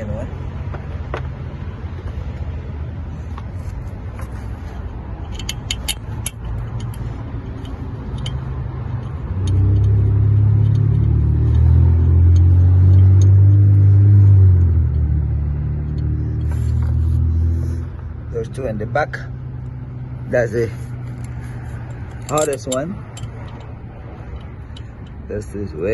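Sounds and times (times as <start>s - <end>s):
vehicle engine humming: 0.0s - 25.9s
light metallic clicks: 21.0s - 25.4s.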